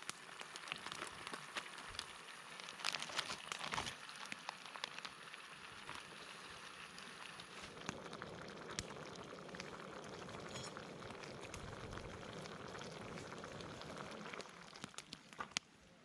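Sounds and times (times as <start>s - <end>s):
food sizzling and crackling: 0.0s - 15.8s.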